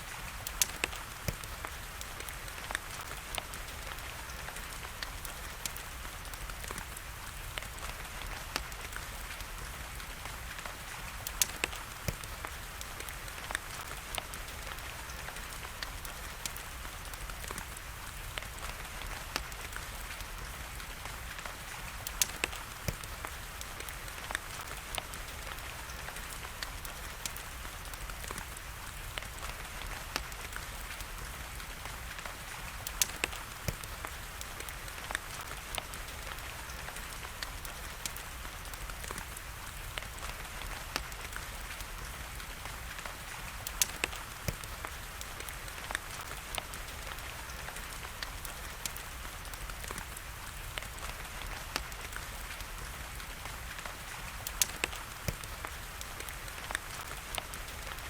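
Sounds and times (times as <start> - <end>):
wood fire crackling and popping: 0.0 - 58.0.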